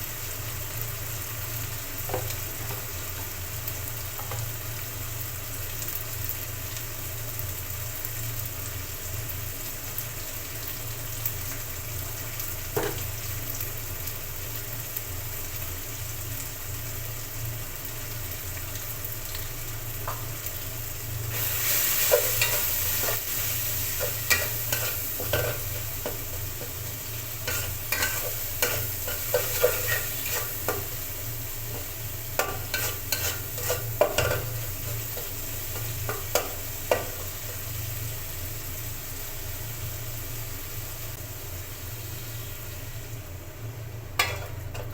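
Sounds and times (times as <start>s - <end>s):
food sizzling in oil: 0.0s - 44.9s
spatula scraping a pan: 21.4s - 26.8s, 27.4s - 31.1s, 31.7s - 37.3s.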